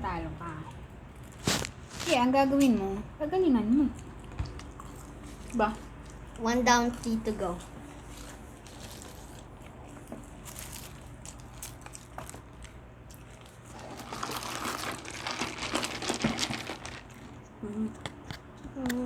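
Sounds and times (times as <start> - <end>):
food wrapper crinkling: 10.4 - 17.4.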